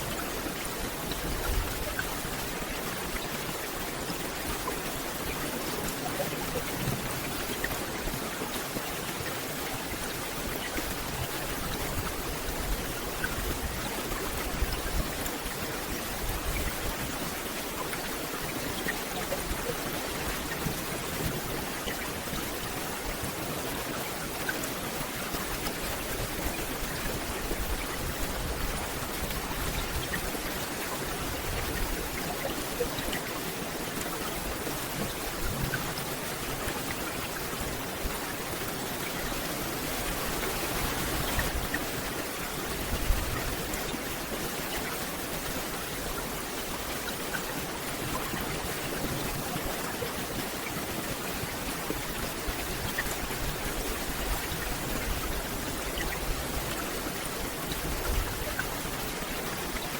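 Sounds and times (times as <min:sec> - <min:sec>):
rain falling on foliage: 0:00.0 - 0:59.9.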